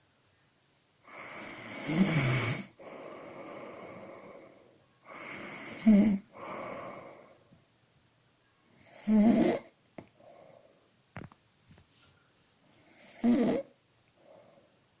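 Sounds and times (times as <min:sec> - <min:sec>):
woman snoring: 0:01.1 - 0:07.4, 0:08.8 - 0:09.8, 0:12.8 - 0:14.4
soft breathing: 0:02.6 - 0:07.6, 0:10.0 - 0:11.0, 0:14.1 - 0:15.0.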